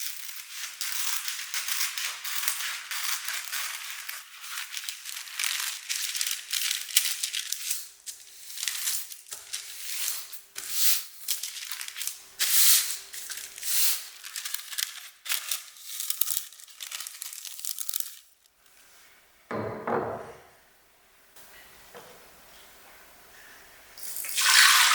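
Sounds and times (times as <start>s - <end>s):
hands rustling and crinkling: 0.0s - 19.2s.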